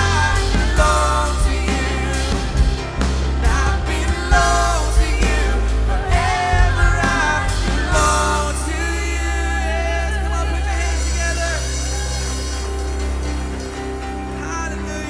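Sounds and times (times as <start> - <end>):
drum hits: 0.0 - 8.7
people singing: 0.0 - 12.8
worship band playing: 0.0 - 15.0.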